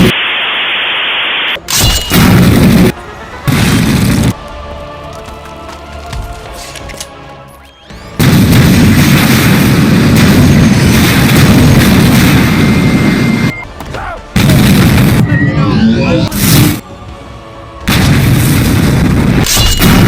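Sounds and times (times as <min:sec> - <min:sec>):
booming weapon fire: 0:01.8 - 0:04.4, 0:08.2 - 0:13.5, 0:14.4 - 0:15.4, 0:17.9 - 0:20.0.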